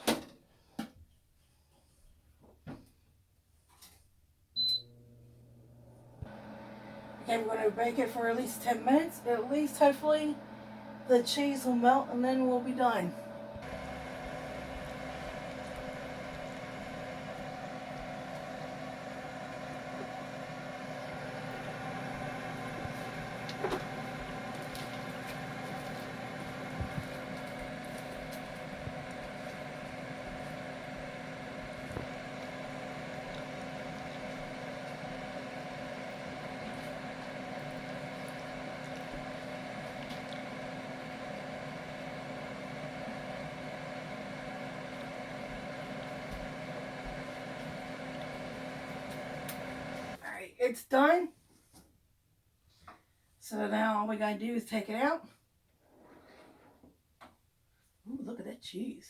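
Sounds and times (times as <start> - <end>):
oven humming: 4.6 - 50.2.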